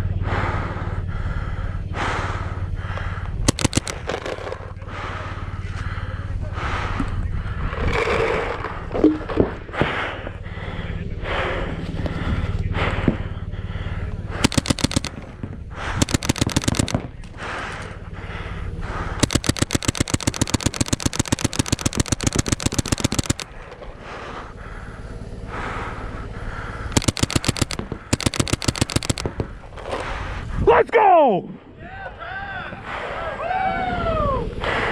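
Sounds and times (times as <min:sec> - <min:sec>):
steady noisy background: 0:00.0 - 0:31.1
scattered clicks: 0:02.9 - 0:05.0, 0:07.0 - 0:09.6, 0:14.3 - 0:18.0, 0:19.1 - 0:24.1, 0:26.9 - 0:30.2
paintball gun firing: 0:03.5 - 0:05.1, 0:07.9 - 0:10.0, 0:14.4 - 0:18.0, 0:19.1 - 0:24.1, 0:26.9 - 0:30.1.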